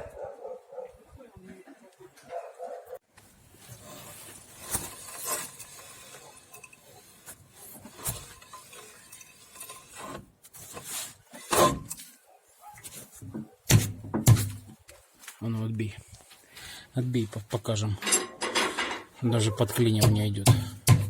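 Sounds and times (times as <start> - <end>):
sharp knocks: 13.7 - 14.7, 20.0 - 21.0.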